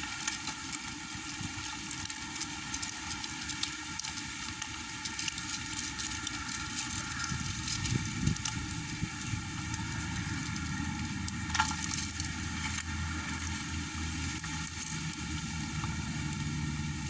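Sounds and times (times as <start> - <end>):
strong wind buffeting microphone: 6.9 - 14.2.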